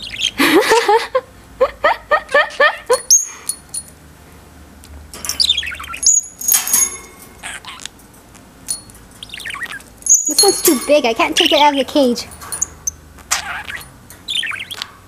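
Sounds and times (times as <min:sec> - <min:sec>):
budgie chirping: 0:02.9 - 0:03.9, 0:05.3 - 0:11.9, 0:12.5 - 0:14.9
high tinkling sounds: 0:03.0 - 0:04.0, 0:05.2 - 0:07.6, 0:08.7 - 0:09.2, 0:10.0 - 0:13.0.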